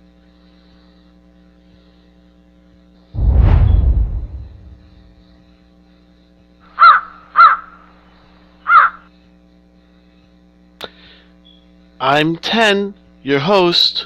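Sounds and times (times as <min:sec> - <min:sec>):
faint steady hum: 0:00.0 - 0:14.0
loud rushing noise: 0:03.2 - 0:05.3
bird cawing: 0:08.7 - 0:09.0.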